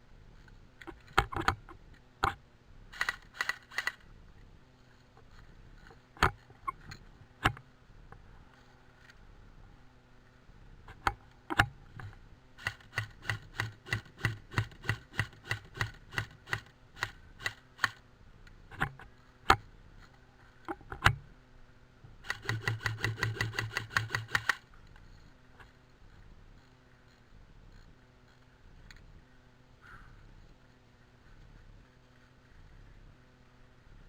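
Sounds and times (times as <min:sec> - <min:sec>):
airsoft electric rifle firing: 0:02.2 - 0:04.1, 0:12.6 - 0:18.0, 0:22.2 - 0:24.7.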